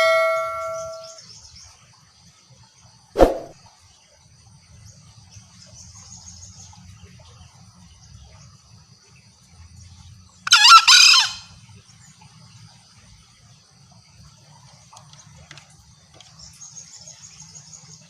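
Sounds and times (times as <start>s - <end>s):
harsh two-part bird call: 0.0s - 1.2s
high-pitched insect drone: 0.0s - 1.2s.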